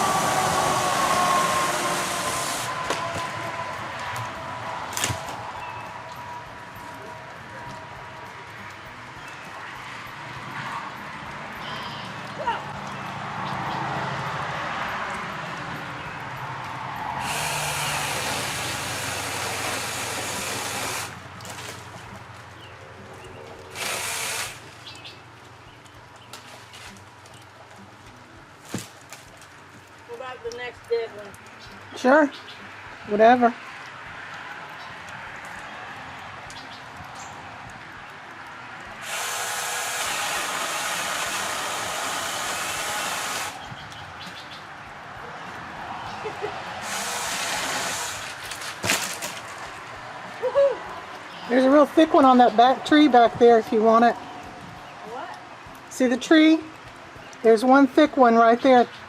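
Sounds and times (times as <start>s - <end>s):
electric chainsaw whining: 0.0s - 4.3s, 17.2s - 21.2s, 23.7s - 24.7s, 39.0s - 43.6s, 46.8s - 49.2s.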